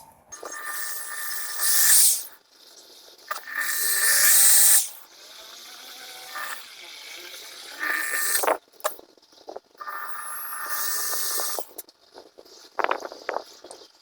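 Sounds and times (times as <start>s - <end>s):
small power tool whining: 0.0s - 2.4s, 3.3s - 11.9s.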